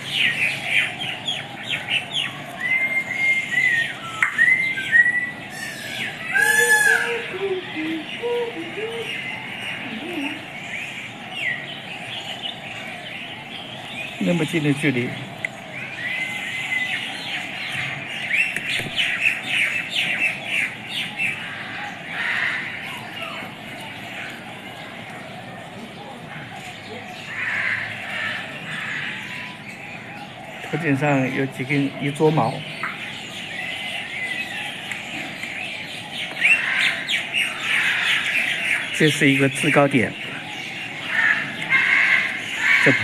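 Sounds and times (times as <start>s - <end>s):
whistled bird notes: 0.0s - 21.4s
falling bird chirps: 0.0s - 25.6s
harsh bird call: 0.0s - 43.0s.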